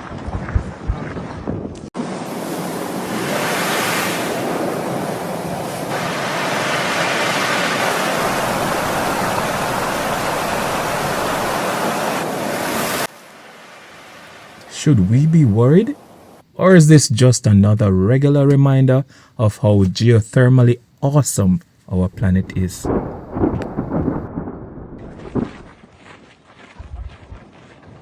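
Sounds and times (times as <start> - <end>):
rushing roar: 2.8 - 13.1.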